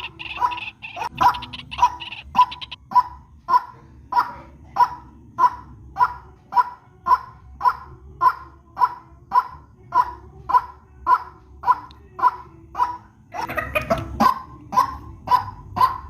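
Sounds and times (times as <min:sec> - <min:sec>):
waterhen calling: 0:00.0 - 0:02.8.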